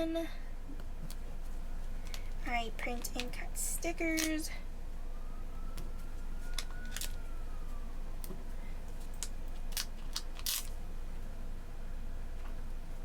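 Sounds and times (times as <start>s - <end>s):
faint rising and falling tone: 4.9s - 8.9s.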